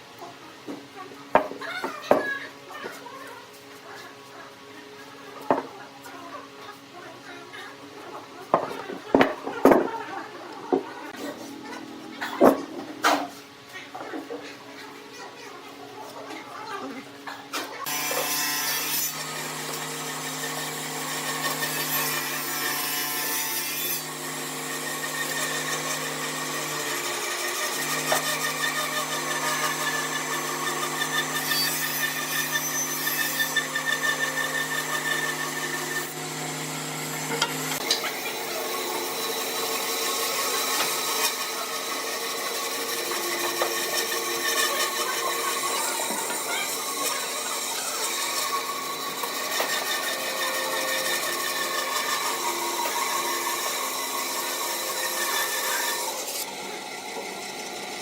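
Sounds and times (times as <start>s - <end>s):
wood lathe motor hum: 19.1s - 58.0s
tool scraping spinning wood: 26.9s - 56.5s.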